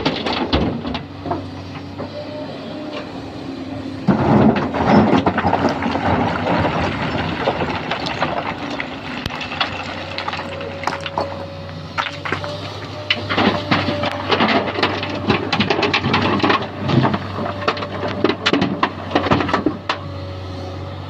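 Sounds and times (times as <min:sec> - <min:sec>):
diesel engine humming: 0:00.0 - 0:21.0
rocks crashing into truck bed: 0:04.1 - 0:11.4, 0:12.0 - 0:19.8.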